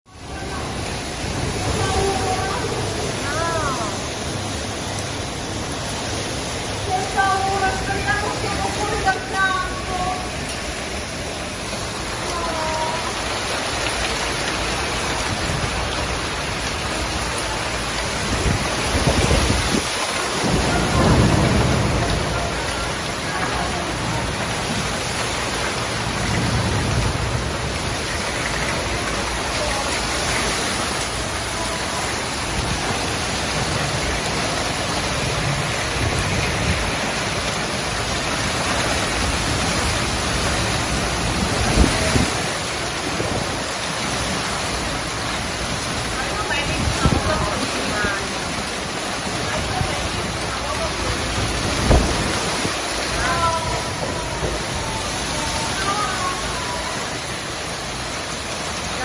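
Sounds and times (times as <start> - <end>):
heavy rain pouring: 0.0 - 59.0
low thunder rumbling: 0.1 - 59.0.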